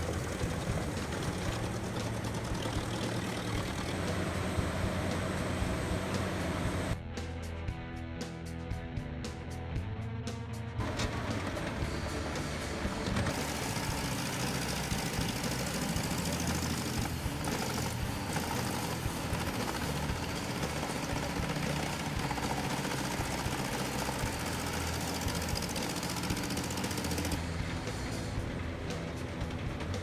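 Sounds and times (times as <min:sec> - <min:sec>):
wood chipper chipping logs: 0:00.0 - 0:07.0, 0:10.8 - 0:27.5.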